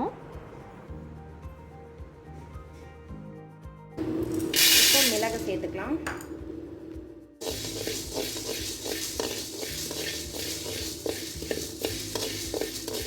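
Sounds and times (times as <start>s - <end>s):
spatula scraping peppercorns in a pan: 4.6s - 5.5s, 7.4s - 13.0s
steady hiss: 7.4s - 13.0s.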